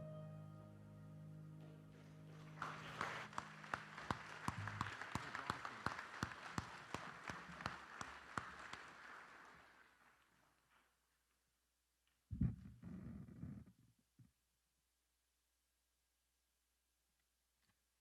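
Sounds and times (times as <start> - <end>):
held music notes: 0.0 - 4.9
audience applauding: 1.9 - 10.6.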